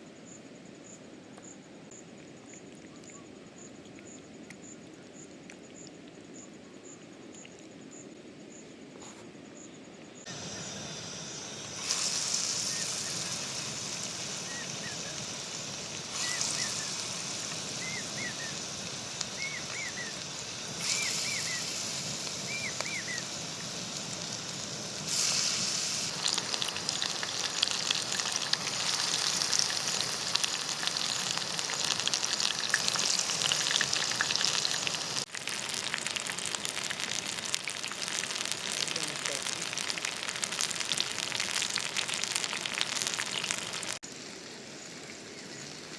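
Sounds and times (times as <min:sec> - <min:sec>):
chicken frying in oil: 0:10.3 - 0:45.9.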